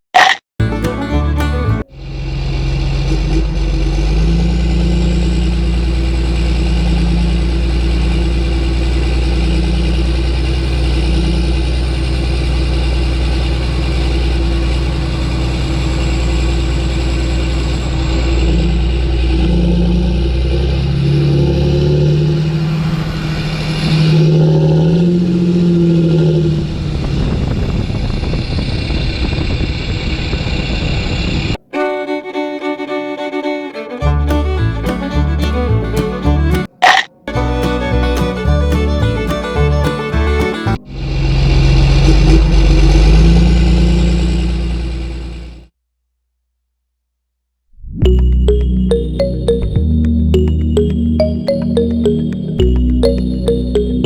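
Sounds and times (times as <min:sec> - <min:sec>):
engine revving: 0:01.3 - 0:27.4, 0:34.0 - 0:45.7.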